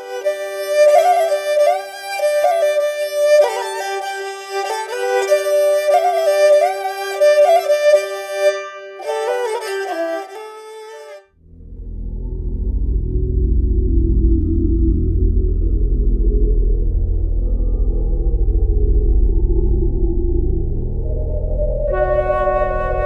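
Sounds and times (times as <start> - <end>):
ornamented melody: 0.0 - 13.8, 20.5 - 23.0
held drone: 0.0 - 23.0.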